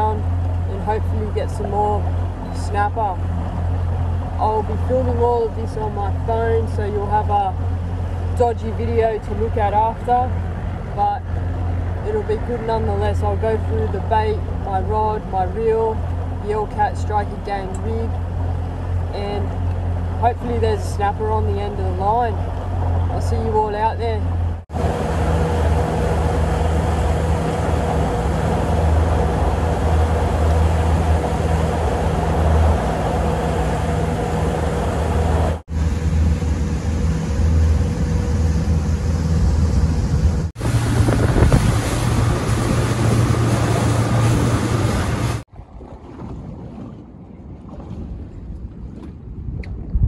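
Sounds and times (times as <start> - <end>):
outboard motor running: 0.0 - 47.0
water noise: 0.0 - 50.0
wind on microphone: 24.0 - 50.0.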